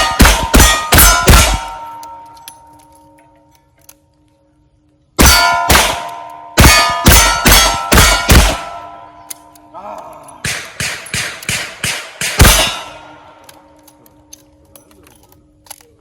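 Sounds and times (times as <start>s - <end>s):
steel targets ringing: 0.0s - 3.2s, 5.2s - 9.8s, 10.4s - 14.3s.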